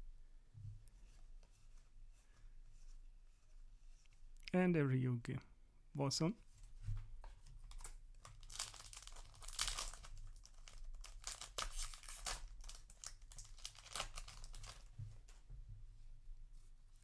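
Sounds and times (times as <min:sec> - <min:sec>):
foil wrapper tearing and crinkling: 0:07.7 - 0:14.9.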